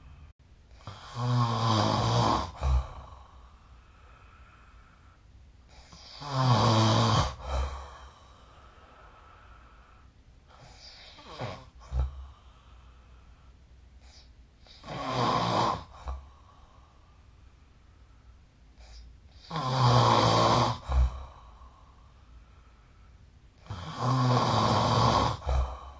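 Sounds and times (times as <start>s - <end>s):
person snoring: 0.0s - 5.1s, 5.7s - 12.9s, 14.1s - 16.3s, 18.8s - 21.8s, 23.6s - 25.9s
faint breath: 2.5s - 6.2s, 7.4s - 14.8s, 16.0s - 19.5s, 20.8s - 23.4s.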